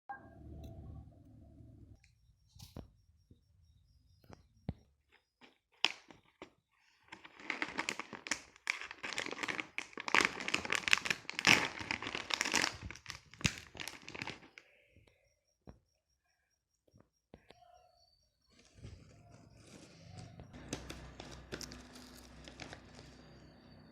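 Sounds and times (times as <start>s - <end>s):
plastic snack packet crinkling: 5.4s - 14.6s, 20.6s - 23.4s.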